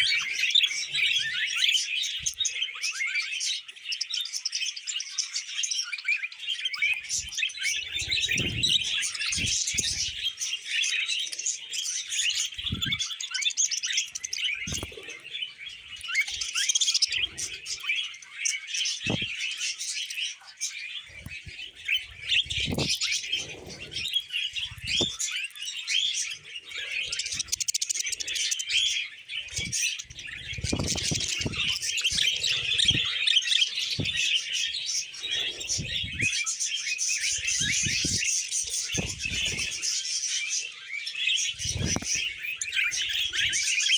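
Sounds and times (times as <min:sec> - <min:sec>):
budgerigars warbling and chirping: 0:00.0 - 0:43.9
soft thuds of birds moving: 0:06.9 - 0:10.7, 0:12.1 - 0:13.2, 0:13.8 - 0:17.9, 0:18.9 - 0:19.8, 0:20.9 - 0:40.5, 0:41.3 - 0:43.9.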